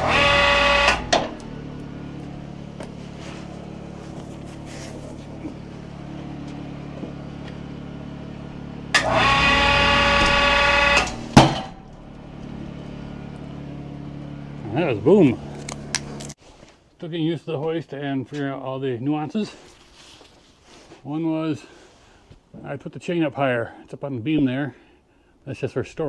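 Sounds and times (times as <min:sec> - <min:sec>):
electric winch whining: 0:00.0 - 0:16.4
steady low hum: 0:00.0 - 0:16.4
loud bang: 0:09.0 - 0:16.2.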